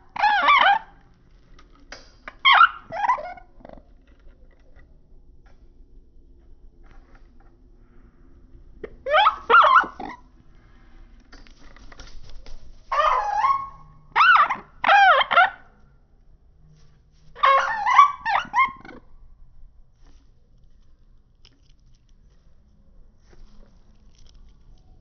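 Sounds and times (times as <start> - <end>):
animal crying: 0.0 - 1.0, 2.4 - 3.9, 9.0 - 10.3, 12.9 - 15.6, 17.4 - 19.1.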